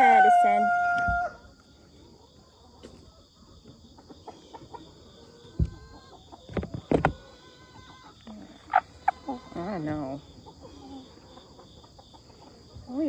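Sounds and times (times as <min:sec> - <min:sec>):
chickens clucking: 0:00.0 - 0:13.0.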